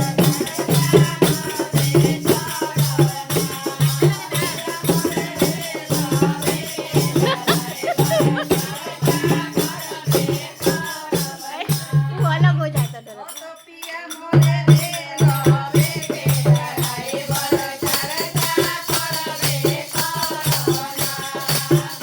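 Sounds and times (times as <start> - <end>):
shaken rattle: 0.0 - 12.1
faint voices singing: 0.0 - 22.0
repeating drum beat: 0.0 - 22.0.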